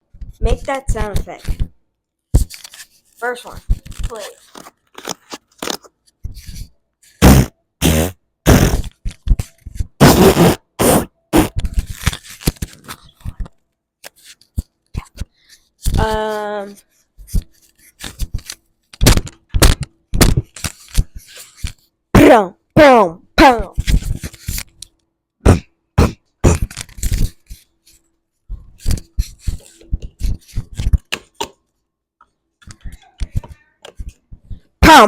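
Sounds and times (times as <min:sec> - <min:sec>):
buzzy mouth tone: 0:07.2 - 0:08.9, 0:10.0 - 0:11.6
person beatboxing: 0:07.2 - 0:08.9, 0:10.0 - 0:11.6, 0:25.4 - 0:26.7.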